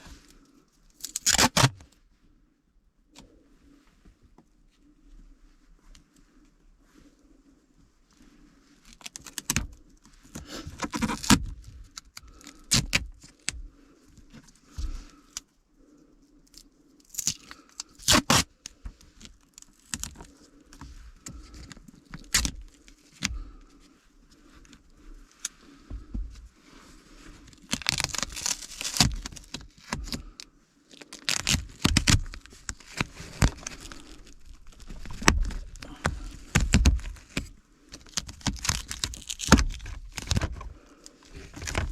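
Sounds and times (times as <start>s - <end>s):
plastic trim clicking and scraping: 10.4s - 13.6s, 31.2s - 40.7s, 41.3s - 41.9s.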